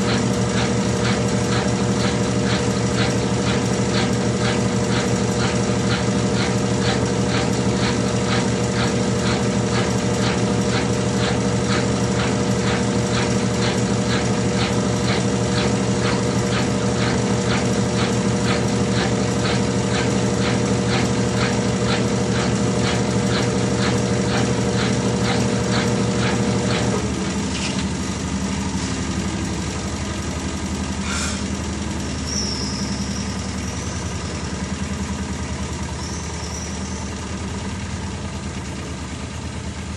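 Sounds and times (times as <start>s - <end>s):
washing machine motor hum: 0.0s - 31.0s.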